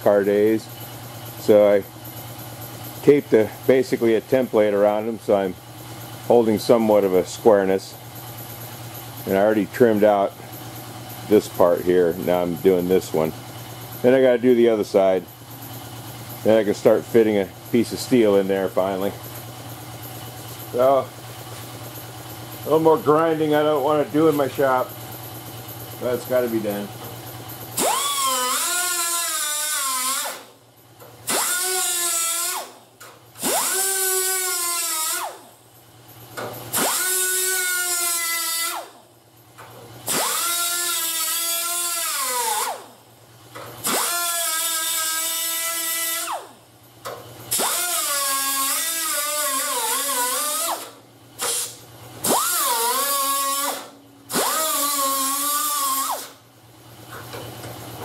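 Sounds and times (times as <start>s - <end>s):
hand grinder grinding sheet steel: 27.8s - 30.5s, 31.2s - 32.8s, 33.4s - 35.4s, 36.8s - 38.9s, 40.1s - 42.9s, 43.8s - 46.5s, 47.5s - 56.4s.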